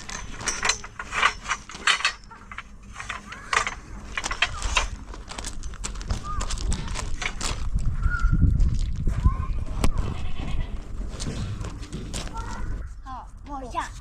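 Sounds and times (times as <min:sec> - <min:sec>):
tools clicking and scraping: 0:00.0 - 0:07.7.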